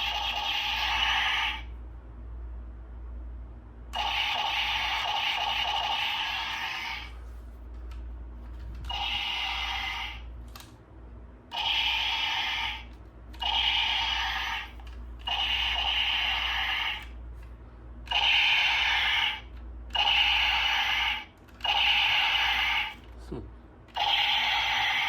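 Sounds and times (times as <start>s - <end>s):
toy gun shooting sound effect: 0.0s - 1.7s, 4.0s - 7.1s, 8.9s - 10.6s, 11.5s - 17.2s, 18.1s - 23.0s, 23.9s - 25.0s.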